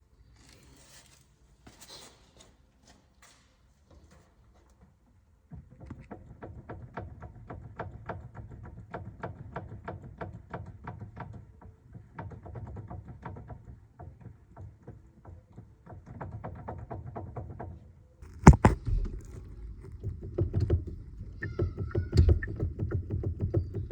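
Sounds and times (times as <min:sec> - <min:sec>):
loud single thump: 0:18.2 - 0:19.4
rapid rhythmic knocking: 0:18.2 - 0:23.9.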